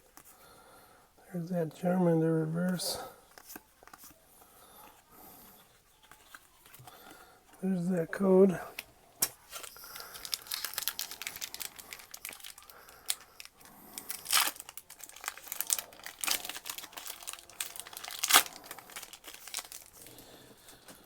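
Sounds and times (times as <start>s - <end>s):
foil wrappers crinkling: 9.2s - 21.0s.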